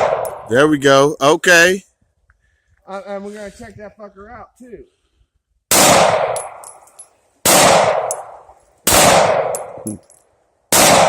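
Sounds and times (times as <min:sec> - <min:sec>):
pistol shots with echo: 0:00.0 - 0:00.5, 0:05.7 - 0:06.7, 0:07.4 - 0:09.8, 0:10.7 - 0:11.0.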